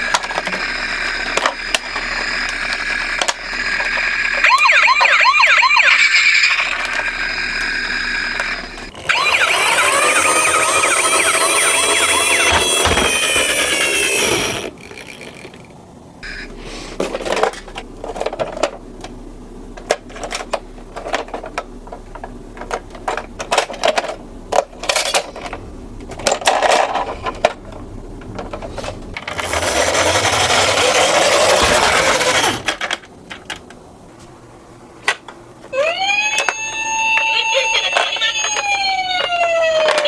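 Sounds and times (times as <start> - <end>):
toy cars rolling and rattling: 0.0 - 15.8, 17.0 - 18.8, 19.8 - 27.6, 28.2 - 33.8, 36.2 - 40.0
ambulance siren wailing: 3.9 - 7.8, 8.9 - 14.6, 35.7 - 40.0.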